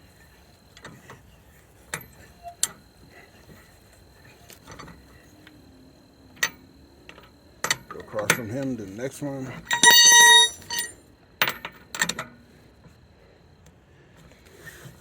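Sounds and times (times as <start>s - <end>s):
tire iron clinking on lug nuts: 9.6s - 11.8s.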